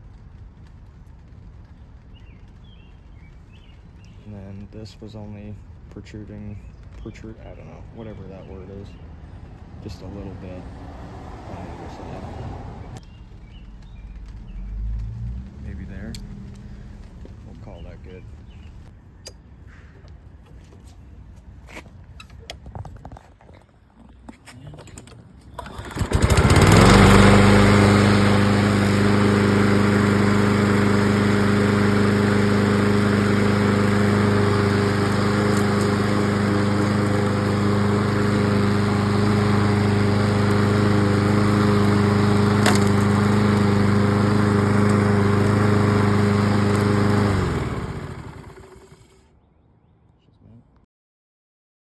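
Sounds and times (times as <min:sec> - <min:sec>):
lawn mower engine: 0:24.9 - 0:49.2.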